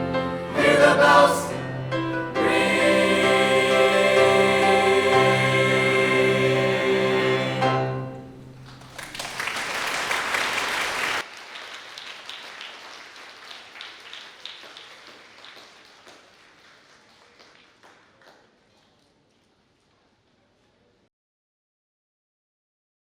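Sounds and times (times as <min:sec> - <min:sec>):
audience applauding: 0:08.6 - 0:19.0.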